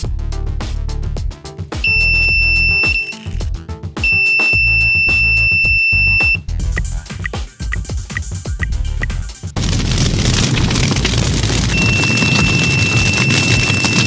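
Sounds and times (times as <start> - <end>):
background music with steady beat: 0.0 - 9.6
high-pitched electronic buzzer alarm: 1.9 - 3.4, 4.0 - 6.4, 11.7 - 14.0.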